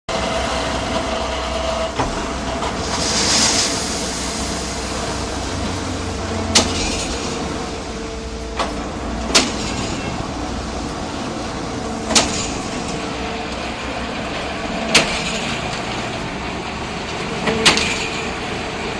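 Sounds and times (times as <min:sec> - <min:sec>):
concrete mixer pump humming: 0:00.1 - 0:18.9
hissing: 0:02.8 - 0:05.8.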